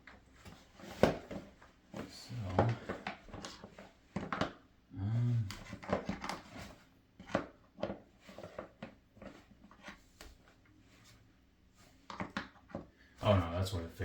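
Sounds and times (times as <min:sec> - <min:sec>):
low hum of a voice: 0:04.9 - 0:05.6.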